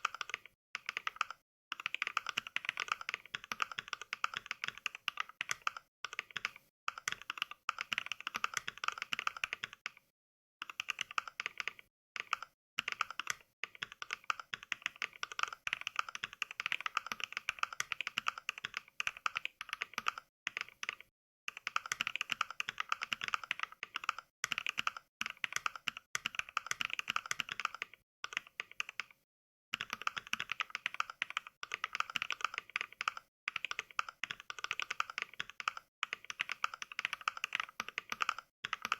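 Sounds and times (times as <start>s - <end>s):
mechanical keyboard typing clacks: 0.0s - 10.0s, 10.6s - 29.2s, 29.8s - 38.9s.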